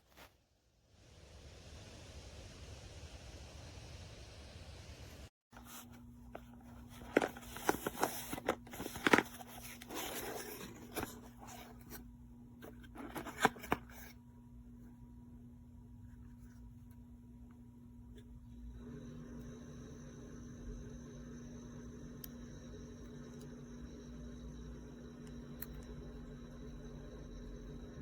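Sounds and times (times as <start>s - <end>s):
low electrical hum: 1.1s - 28.0s
hands handling small objects: 6.4s - 11.8s.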